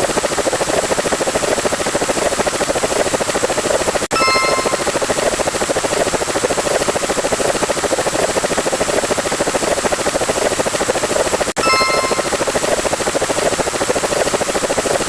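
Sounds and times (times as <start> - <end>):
short bright chime: 4.1 - 5.2, 11.6 - 12.8.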